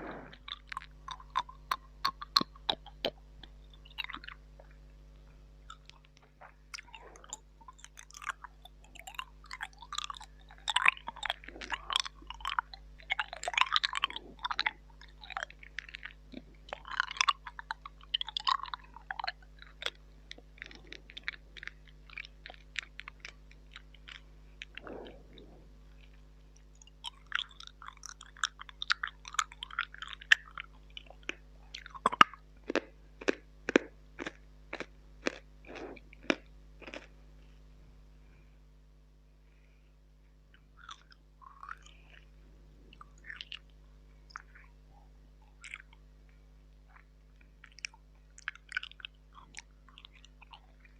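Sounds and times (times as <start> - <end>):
tongue clicks: 0.0 - 4.8, 5.7 - 37.1, 42.9 - 46.1
lip smacks: 0.0 - 34.4, 40.5 - 50.9
wet mouth sounds: 0.0 - 37.1, 40.5 - 50.9.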